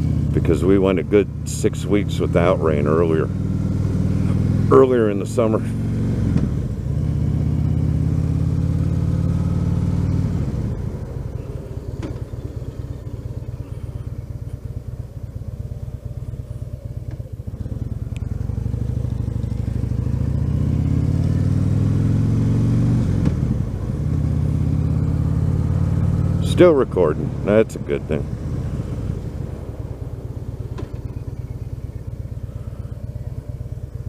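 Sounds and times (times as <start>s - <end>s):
motorcycle engine revving: 0.0s - 34.0s.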